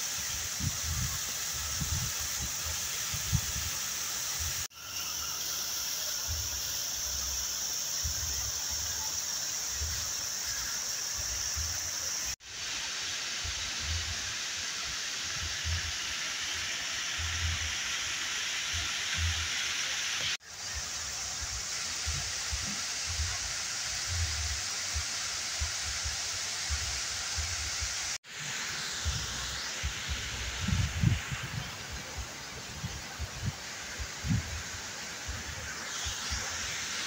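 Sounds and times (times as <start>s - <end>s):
waterfall rushing: 0.0s - 37.0s.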